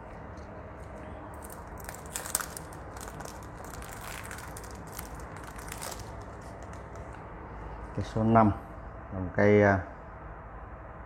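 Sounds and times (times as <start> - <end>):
packaging crinkling: 0.4 - 7.2.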